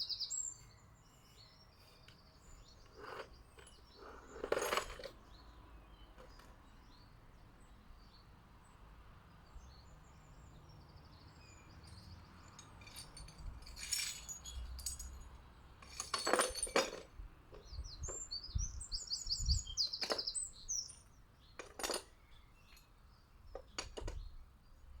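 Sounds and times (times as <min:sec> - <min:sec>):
small bird singing: 0:00.0 - 0:04.4, 0:09.4 - 0:12.7, 0:17.5 - 0:25.0
birds tapping on glass jar: 0:11.8 - 0:22.9, 0:23.5 - 0:24.4.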